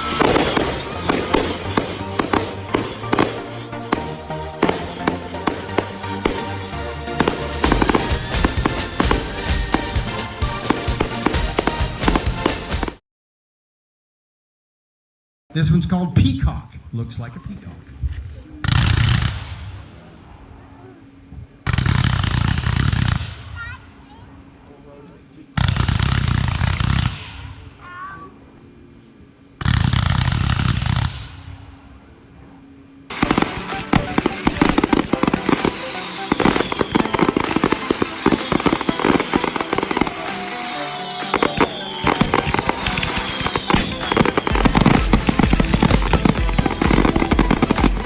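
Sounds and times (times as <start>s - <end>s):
fireworks rushing blasts: 0.0s - 13.0s, 18.7s - 20.0s, 21.7s - 23.6s, 33.1s - 48.0s
background music with bass beat: 0.2s - 13.0s, 33.1s - 48.0s.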